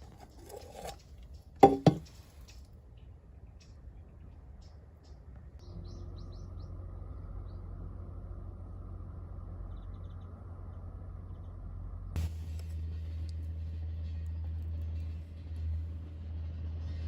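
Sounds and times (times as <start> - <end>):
small birds chirping: 0.0 - 8.0, 9.5 - 12.2
steady low rumble: 5.6 - 17.0.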